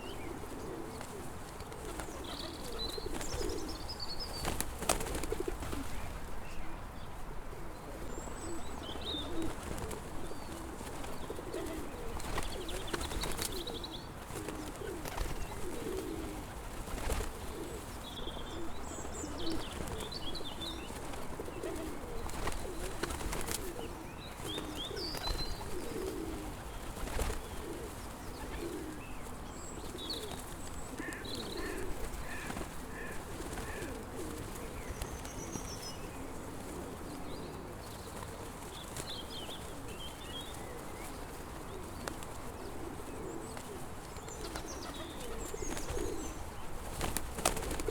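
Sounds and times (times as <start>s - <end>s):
pigeons cooing: 0.0s - 6.2s, 7.6s - 47.9s
small birds chirping: 0.0s - 7.2s, 7.8s - 47.9s.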